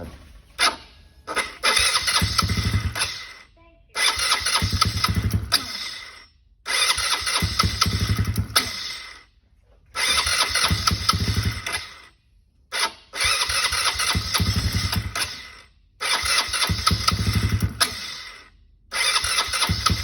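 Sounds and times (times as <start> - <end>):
engine starter cranking: 0.0 - 9.3, 10.0 - 12.1, 12.7 - 20.0.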